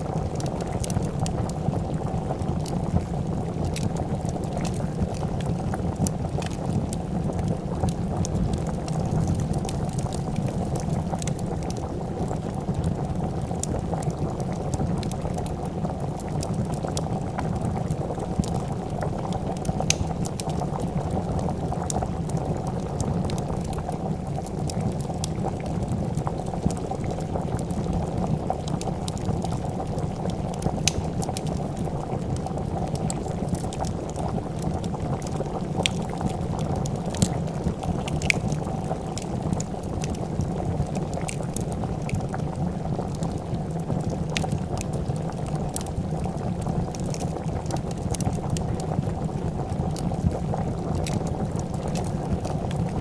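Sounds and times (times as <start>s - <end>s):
soup boiling in a pot: 0.0s - 53.0s
wood fire crackling: 0.0s - 53.0s.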